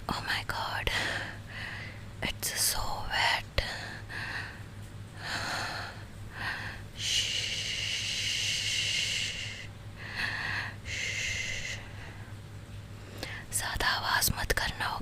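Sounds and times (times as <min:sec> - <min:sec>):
woman breathing heavily: 0:00.8 - 0:02.2, 0:03.6 - 0:13.5.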